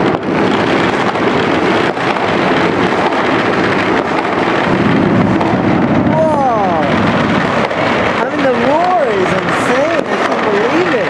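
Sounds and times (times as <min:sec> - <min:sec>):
firecrackers and fireworks crackling: 0:00.0 - 0:11.0.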